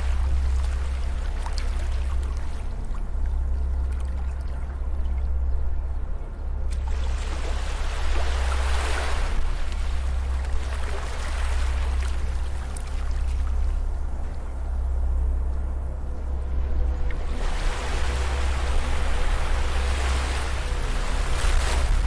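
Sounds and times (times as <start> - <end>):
low rumble: 0.0 - 22.0
ocean waves washing onto beach: 6.8 - 13.5, 17.1 - 22.0.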